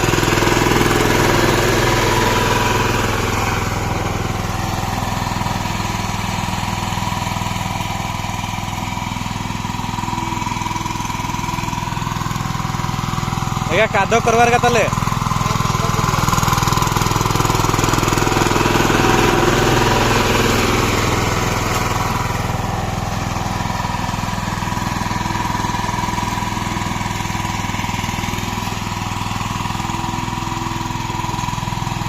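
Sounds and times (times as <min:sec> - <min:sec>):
diesel tiller engine running: 0:00.0 - 0:32.0.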